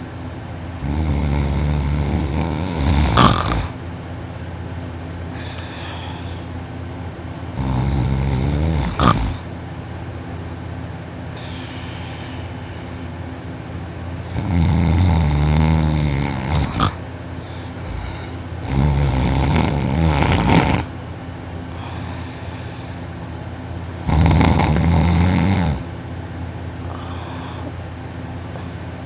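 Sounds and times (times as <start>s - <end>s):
steady background hum: 0.0s - 29.0s
man snoring loudly: 0.8s - 3.8s, 7.5s - 9.5s, 14.2s - 17.0s, 17.6s - 20.9s, 24.0s - 25.9s.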